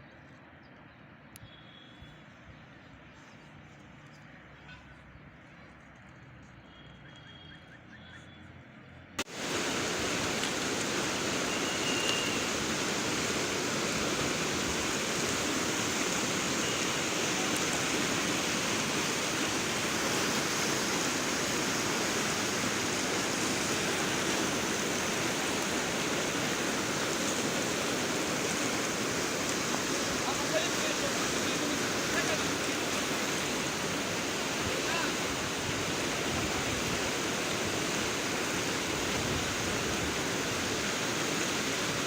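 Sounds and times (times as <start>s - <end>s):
river floodwater roaring: 9.2s - 42.0s.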